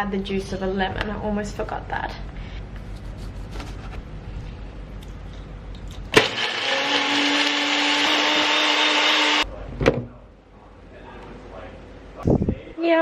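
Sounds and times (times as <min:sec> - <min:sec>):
blender running: 0:06.1 - 0:09.5.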